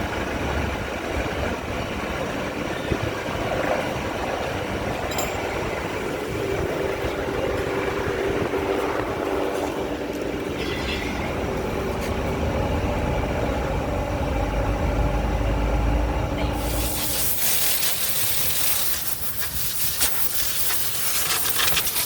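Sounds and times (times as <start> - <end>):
machine running: 4.4 - 22.0.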